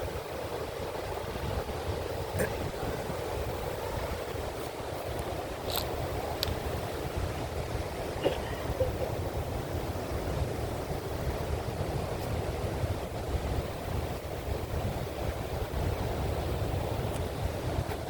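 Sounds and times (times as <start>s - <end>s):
wind rumbling on microphone: 0.0s - 18.0s.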